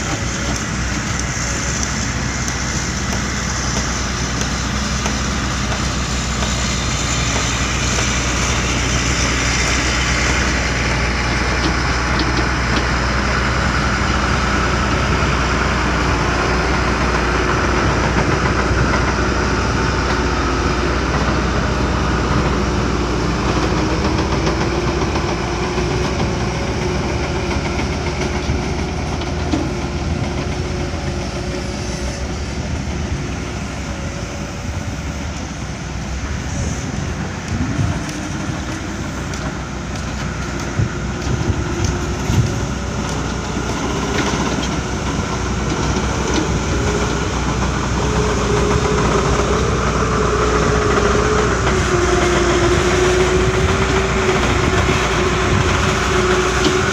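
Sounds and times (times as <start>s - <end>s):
diesel engine running: 0.0s - 56.9s
hydraulic whine: 0.0s - 56.9s.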